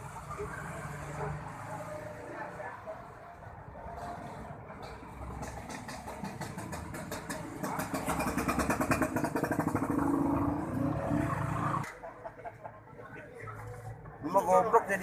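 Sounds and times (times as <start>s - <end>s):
small motorcycle engine running: 5.4s - 11.8s.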